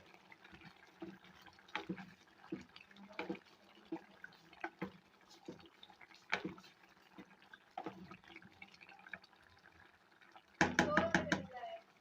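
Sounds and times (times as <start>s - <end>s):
faint liquid drips: 0.0s - 12.0s.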